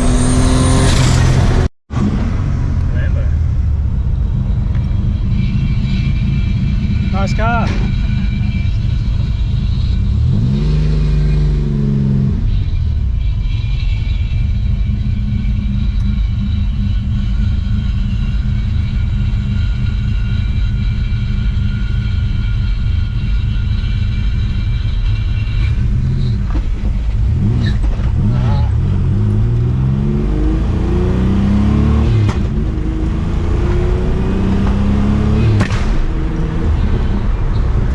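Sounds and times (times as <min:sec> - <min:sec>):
car engine revving: 0:00.0 - 0:37.9.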